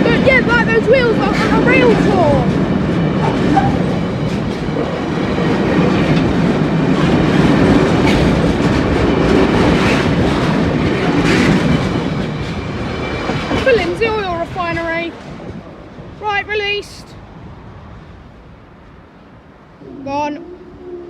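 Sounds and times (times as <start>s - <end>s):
train wheels clicking over rail joints: 0.0s - 15.6s
freight train rumbling past: 0.0s - 21.0s.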